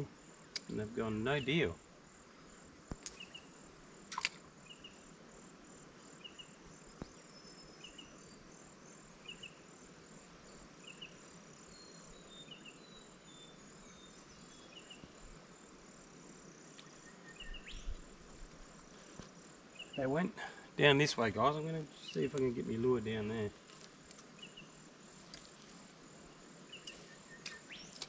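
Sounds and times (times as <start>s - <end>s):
insects chirping: 0.0s - 28.0s.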